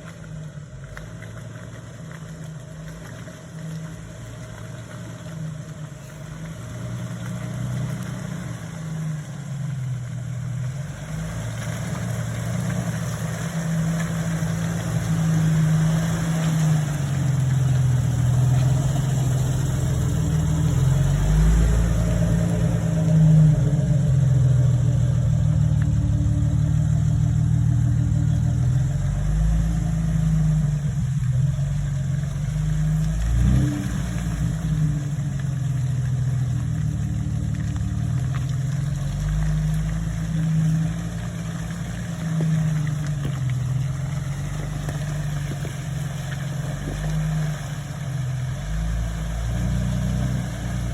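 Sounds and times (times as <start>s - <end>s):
engine revving under load: 10.6s - 50.9s.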